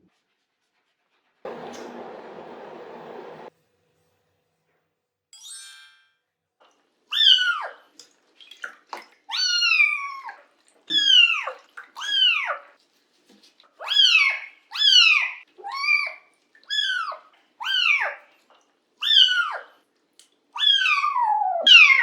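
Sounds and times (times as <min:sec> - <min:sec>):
kitten meowing: 0:20.6 - 0:22.0.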